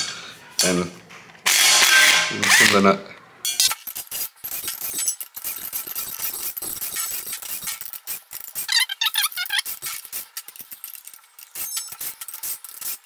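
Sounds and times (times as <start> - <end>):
ratchet wrench clicking: 3.6 - 13.0.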